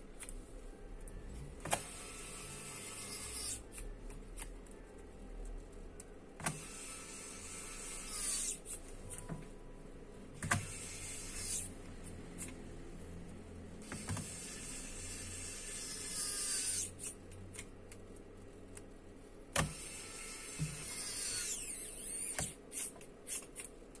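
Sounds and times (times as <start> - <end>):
electric screwdriver motor whining: 1.7 - 3.6, 19.6 - 22.9.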